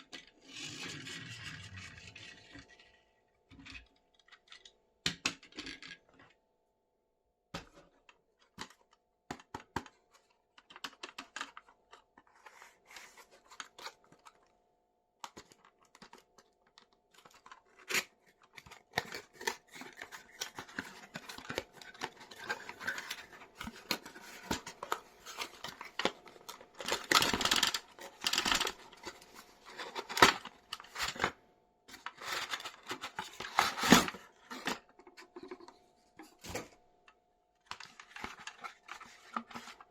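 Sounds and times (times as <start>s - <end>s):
packaging clicks: 15.3s - 31.3s
packaging rustling and tearing: 15.3s - 34.9s, 37.7s - 39.9s.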